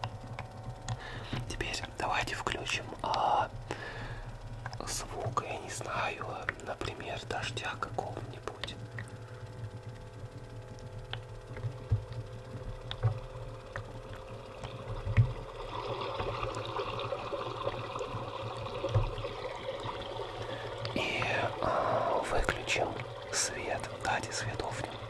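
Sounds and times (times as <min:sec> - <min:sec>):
humidifier humming: 0:00.0 - 0:25.0
recorded rain hiss from speaker: 0:00.0 - 0:25.0
sharp clicks and knocks: 0:10.8 - 0:15.4.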